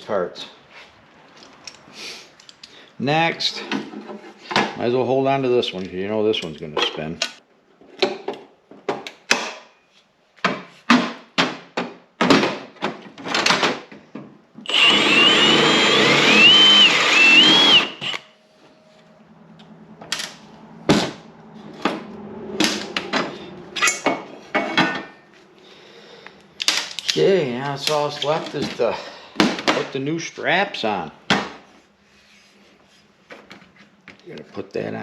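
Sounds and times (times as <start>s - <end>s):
clicks and knocks of parts handled: 1.3s - 2.8s, 26.2s - 28.8s
power drill whining: 14.6s - 18.3s.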